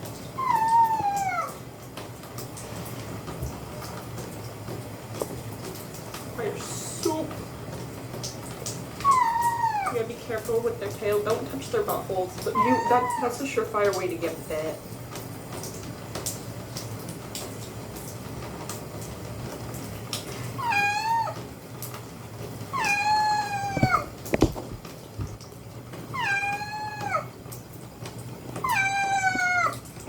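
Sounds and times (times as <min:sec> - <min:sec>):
cat meowing: 0:00.4 - 0:01.6, 0:09.0 - 0:10.0, 0:12.6 - 0:13.3, 0:20.6 - 0:21.4, 0:22.7 - 0:24.1, 0:26.2 - 0:27.3, 0:28.6 - 0:29.8.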